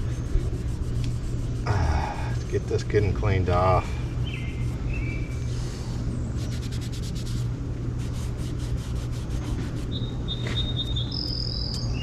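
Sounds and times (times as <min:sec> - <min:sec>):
rubbing strokes on plastic pipe: 0:00.0 - 0:03.6, 0:06.4 - 0:10.0
steady low rumble: 0:00.0 - 0:12.0.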